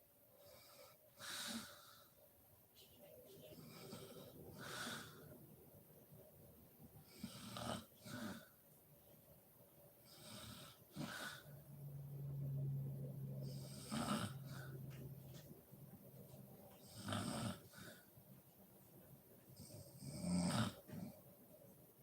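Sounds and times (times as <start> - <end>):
woman snoring: 13.4 - 14.8, 16.9 - 17.9, 19.8 - 20.9.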